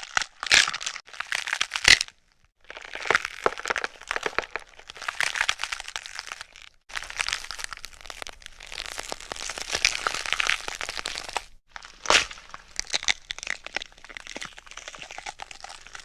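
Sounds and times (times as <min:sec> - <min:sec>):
gore crunching and crackling: 0:00.0 - 0:16.0.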